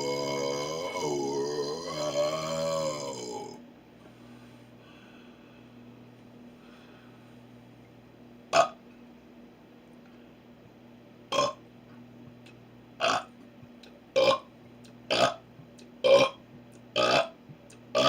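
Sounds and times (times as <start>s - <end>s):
person burping: 0.0s - 3.6s, 8.5s - 8.8s, 11.3s - 11.6s, 13.0s - 13.3s, 14.2s - 14.5s, 15.1s - 15.4s, 16.0s - 16.4s, 17.0s - 18.0s.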